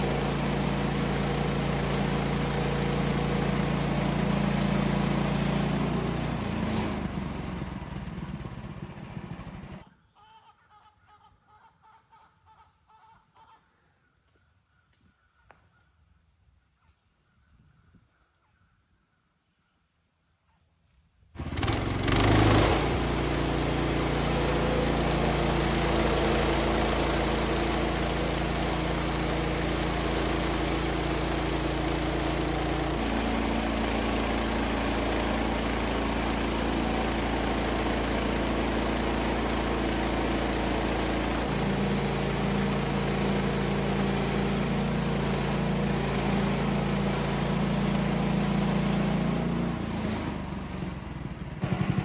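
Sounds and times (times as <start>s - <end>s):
engine starting and running: 0.0s - 9.9s, 21.4s - 52.0s.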